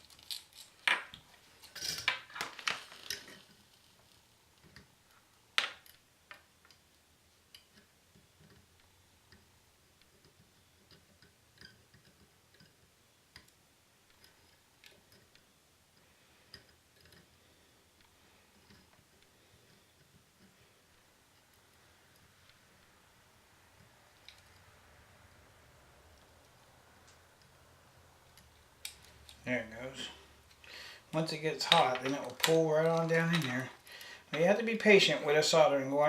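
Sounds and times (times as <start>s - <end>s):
sharp handling clicks and knocks: 30.0s - 34.4s.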